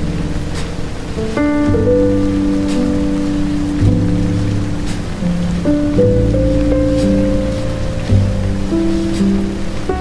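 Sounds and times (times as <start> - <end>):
rain hiss: 0.0 - 10.0
slow held-note music: 0.0 - 10.0.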